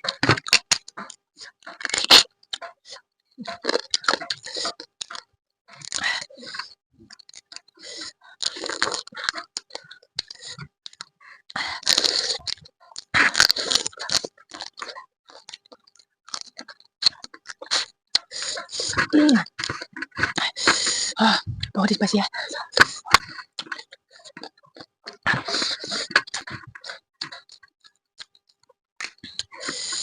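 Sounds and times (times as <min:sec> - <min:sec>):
crunching and chewing crab: 0:00.0 - 0:21.2, 0:22.4 - 0:30.0
clicking mouth sounds: 0:22.7 - 0:30.0.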